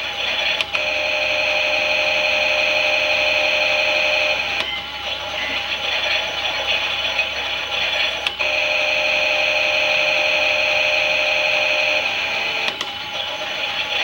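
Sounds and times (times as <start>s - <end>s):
toy washing machine motor whine: 0.0s - 14.0s
click: 0.6s - 0.8s, 12.6s - 13.0s.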